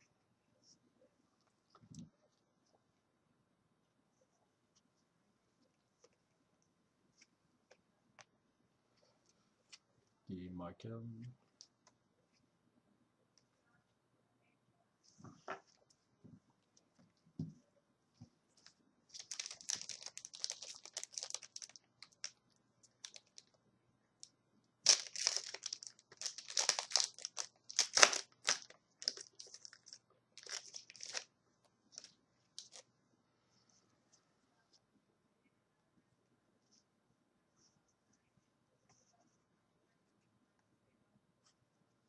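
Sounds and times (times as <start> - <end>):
foil wrapper crinkling and tearing: 19.1 - 23.5, 24.8 - 31.3, 32.0 - 32.8.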